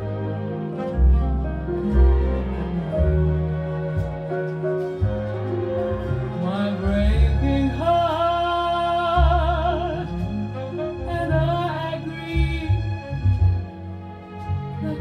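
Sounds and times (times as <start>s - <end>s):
heavy steady bass: 0.0s - 14.0s.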